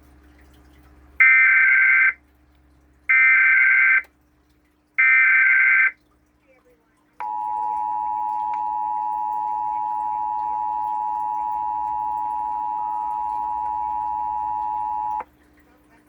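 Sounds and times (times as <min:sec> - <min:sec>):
two-tone alert signal: 0:07.2 - 0:15.2.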